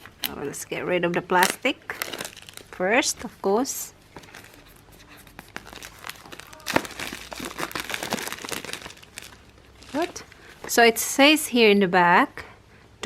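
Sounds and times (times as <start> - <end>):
plastic wrap crinkling: 1.4 - 3.0, 4.1 - 10.7.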